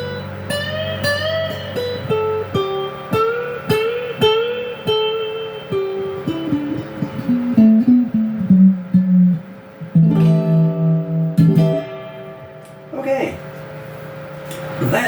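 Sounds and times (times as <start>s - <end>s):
overdriven electric guitar licks: 0.0s - 12.9s.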